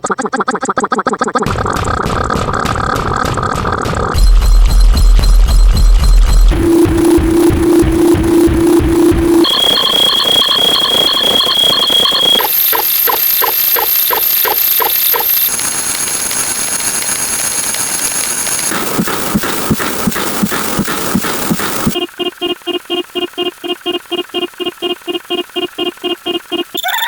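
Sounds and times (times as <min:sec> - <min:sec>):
regular ticks: 0:00.0 - 0:01.8, 0:06.2 - 0:27.0
electronic beeping tones: 0:06.3 - 0:15.5, 0:20.8 - 0:27.0.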